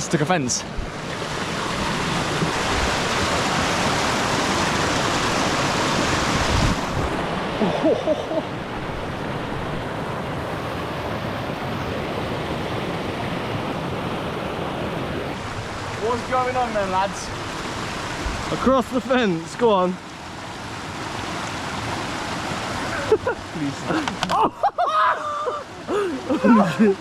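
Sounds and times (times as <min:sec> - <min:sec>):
stream rushing over rocks: 0:00.0 - 0:24.6.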